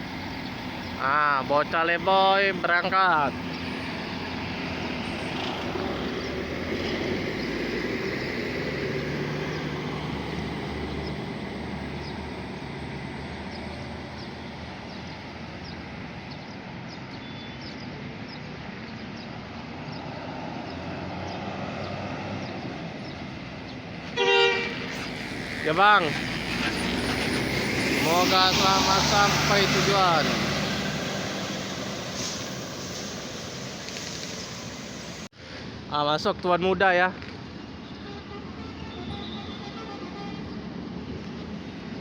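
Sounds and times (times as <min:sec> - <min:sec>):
diesel bus engine rumble: 0:00.0 - 0:16.5, 0:19.9 - 0:35.3
road and traffic noise: 0:00.0 - 0:42.0.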